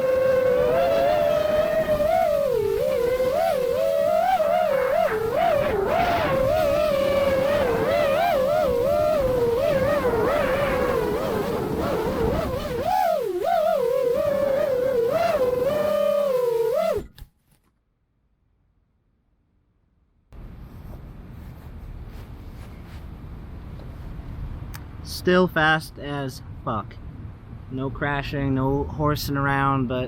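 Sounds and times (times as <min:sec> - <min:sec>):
drone motors whining: 0:00.0 - 0:17.2.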